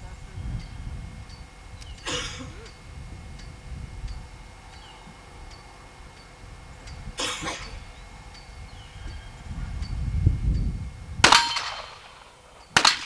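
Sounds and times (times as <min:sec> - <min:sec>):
low steady rumble: 0:00.0 - 0:13.0
revolver gunshot: 0:11.2 - 0:13.0.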